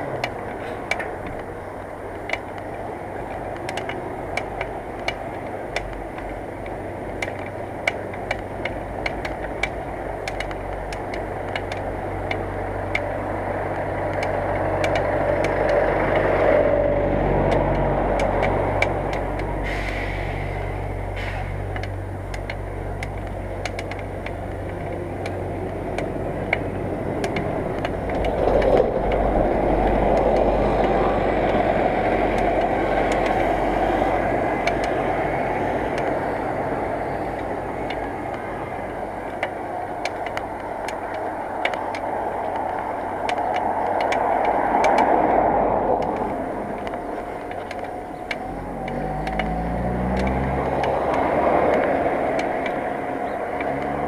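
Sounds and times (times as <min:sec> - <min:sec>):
motor vehicles passing: 0:00.0 - 0:54.0
road traffic: 0:00.0 - 0:54.0
light clicks: 0:13.8 - 0:16.3, 0:21.7 - 0:31.7, 0:37.3 - 0:54.0
wind rush: 0:25.8 - 0:48.8.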